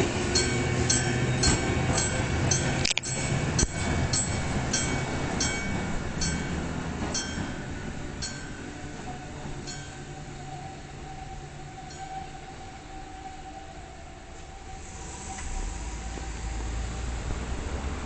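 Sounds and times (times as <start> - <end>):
tram rail rumble: 0.0 - 18.0
level crossing bell clanking: 0.4 - 8.7.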